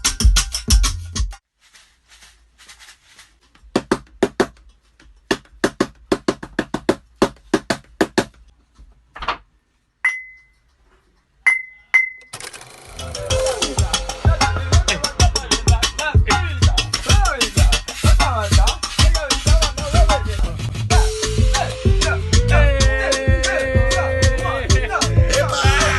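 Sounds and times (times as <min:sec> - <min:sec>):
sharp rhythmic taps on objects: 0:03.7 - 0:08.5
drum beat: 0:13.2 - 0:25.9.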